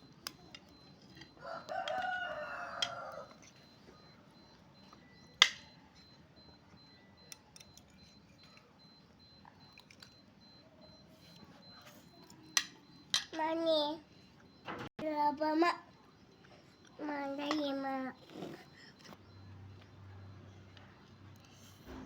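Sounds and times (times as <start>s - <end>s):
rooster crowing: 1.4s - 3.4s.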